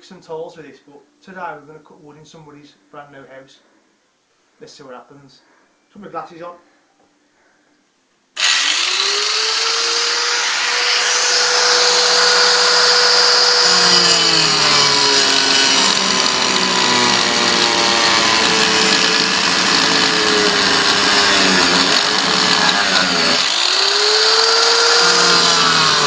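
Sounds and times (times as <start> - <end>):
angle grinder whine: 8.4 - 26.0
grinder disc cutting wood: 8.4 - 26.0.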